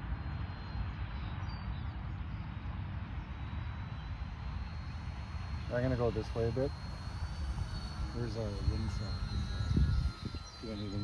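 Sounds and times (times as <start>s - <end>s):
electric motor and propeller droning: 0.0s - 11.0s
thin high whine: 3.2s - 11.0s.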